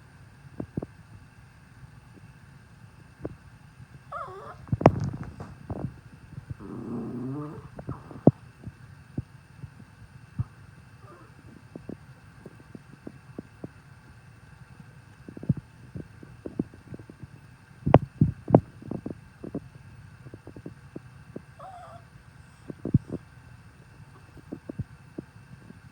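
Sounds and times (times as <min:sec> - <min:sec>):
dog whining: 0:04.1 - 0:05.9, 0:06.6 - 0:08.4, 0:10.4 - 0:11.8, 0:21.5 - 0:23.2
low thumps and knocks: 0:04.5 - 0:06.8.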